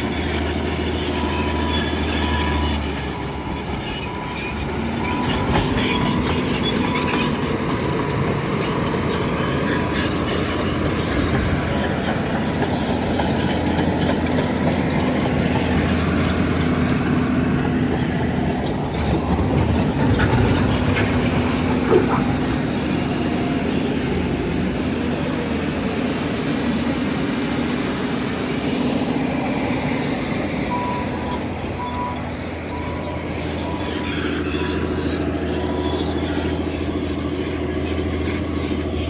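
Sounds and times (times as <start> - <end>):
diesel engine droning with clatter: 0.0 - 39.0.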